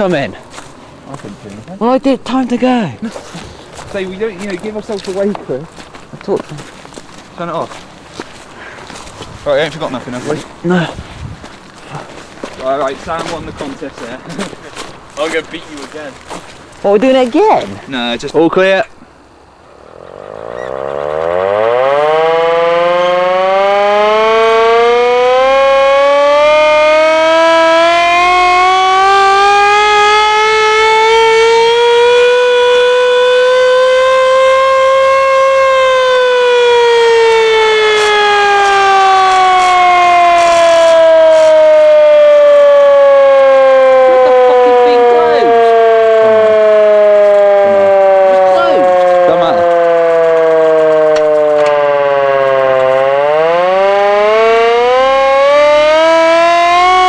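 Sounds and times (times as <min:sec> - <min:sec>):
hand-cranked siren wailing: 0:19.9 - 0:57.0.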